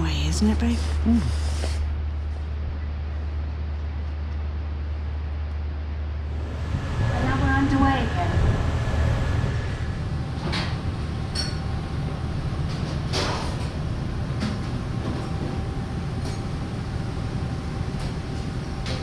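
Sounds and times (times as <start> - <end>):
boat engines rumbling: 0.0 - 5.1, 6.1 - 12.3.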